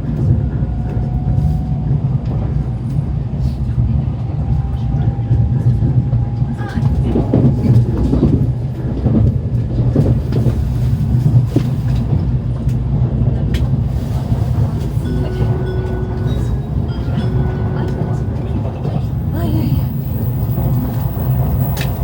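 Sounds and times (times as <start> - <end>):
train running low rumble: 0.0 - 22.0
onboard melodic chime: 15.0 - 18.6.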